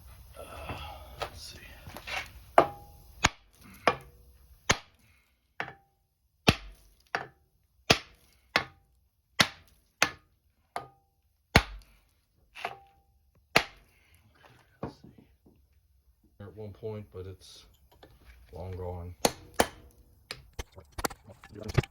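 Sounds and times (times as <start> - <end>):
hammer striking metal: 2.6 - 4.1.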